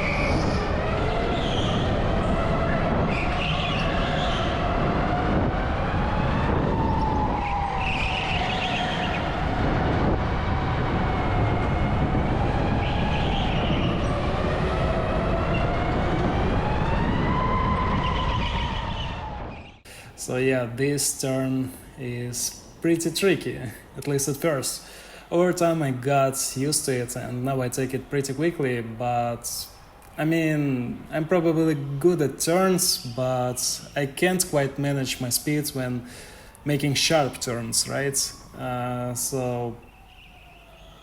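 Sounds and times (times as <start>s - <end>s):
wind noise: 0.0s - 24.8s.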